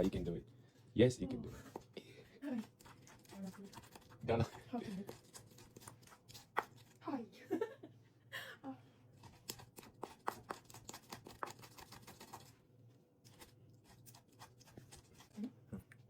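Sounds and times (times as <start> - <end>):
pestle grinding pepper in bowl: 2.6 - 7.0, 9.2 - 12.5, 13.3 - 15.4.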